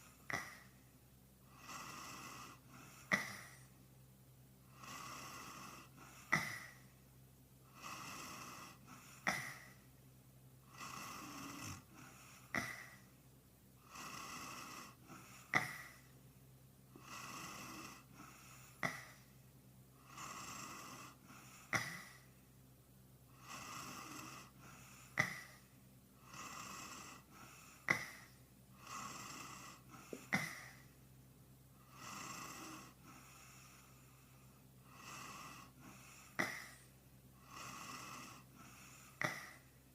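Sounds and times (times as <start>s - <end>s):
man snoring: 1.5s - 3.6s, 4.7s - 6.8s, 7.7s - 9.8s, 10.7s - 13.0s, 13.8s - 16.1s, 17.0s - 19.2s, 20.0s - 22.2s, 23.4s - 25.6s, 26.2s - 30.8s, 31.8s - 34.1s, 34.8s - 36.8s, 37.4s - 39.7s.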